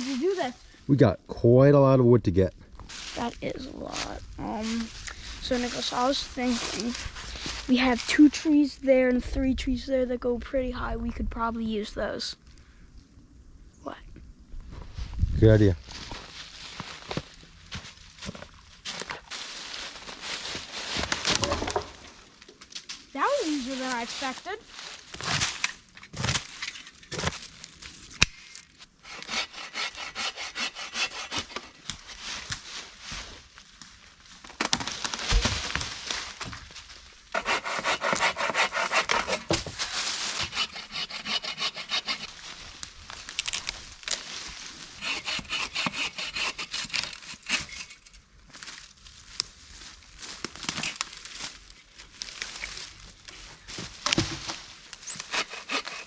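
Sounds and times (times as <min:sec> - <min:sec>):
hand saw cutting wood: 0:29.0 - 0:31.8, 0:37.3 - 0:39.6, 0:40.2 - 0:42.3, 0:45.0 - 0:47.9, 0:55.0 - 0:56.0.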